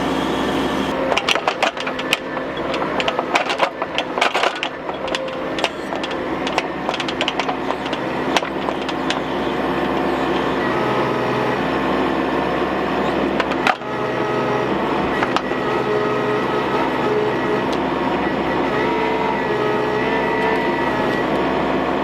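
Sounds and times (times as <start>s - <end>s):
excavator diesel engine running: 0.0s - 22.0s.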